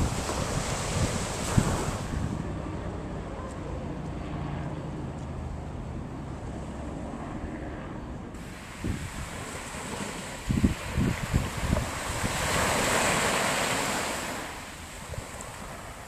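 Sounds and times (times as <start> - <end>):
wind buffeting microphone: 0.0 - 2.9, 8.4 - 16.0.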